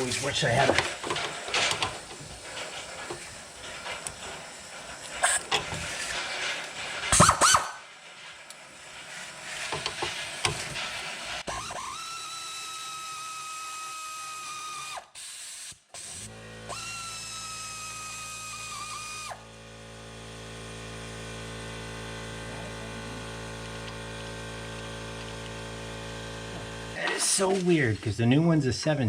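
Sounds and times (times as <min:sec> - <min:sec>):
air ratchet whining: 0:00.0 - 0:19.5.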